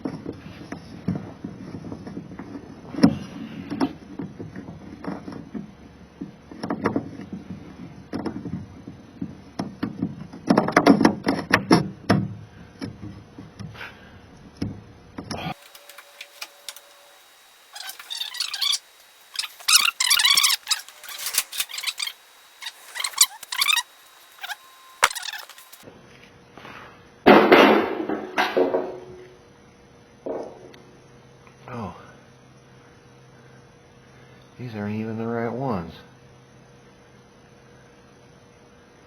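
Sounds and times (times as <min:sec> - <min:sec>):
scratchy rustling: 0:15.6 - 0:25.8
clicks and clatter of metal parts: 0:19.4 - 0:25.8.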